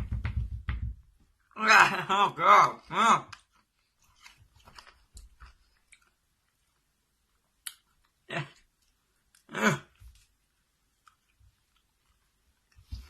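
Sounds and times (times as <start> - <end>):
person chewing candy: 3.3 - 6.8.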